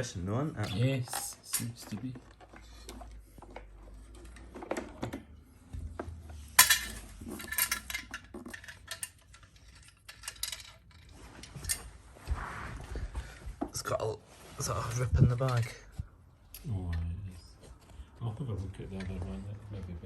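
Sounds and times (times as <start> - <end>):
vacuum cleaner parts clattering: 0.0 - 12.0, 14.6 - 17.1, 18.6 - 20.0.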